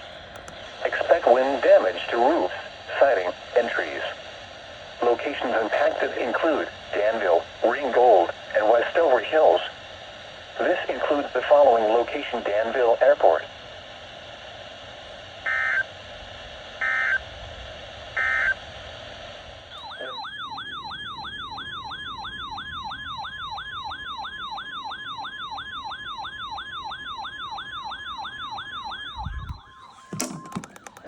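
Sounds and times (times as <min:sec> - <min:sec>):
steady radio hiss: 0:00.0 - 0:22.2
electronic alarm tone sweeping upward: 0:19.7 - 0:31.0.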